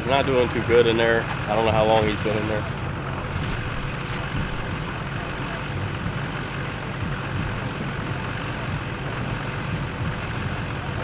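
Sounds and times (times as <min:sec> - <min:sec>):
vehicle engine idling: 0:00.0 - 0:11.0.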